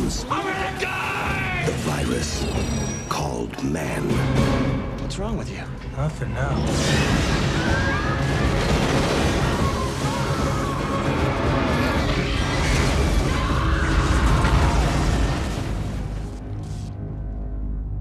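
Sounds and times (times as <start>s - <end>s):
dramatic orchestral score: 0.0s - 17.9s
crashing sound effects: 6.6s - 16.9s.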